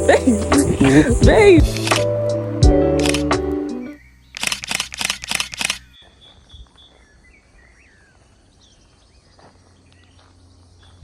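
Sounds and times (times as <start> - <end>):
shutter-like clicks: 1.8 - 2.1, 3.0 - 3.4, 4.4 - 5.9
bird chirps: 3.9 - 11.0.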